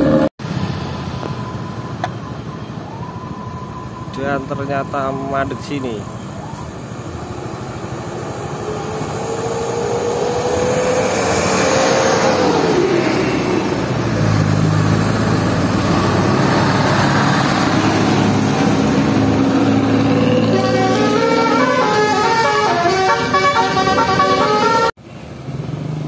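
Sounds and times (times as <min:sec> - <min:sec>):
bus engine rumble: 0:06.0 - 0:26.0.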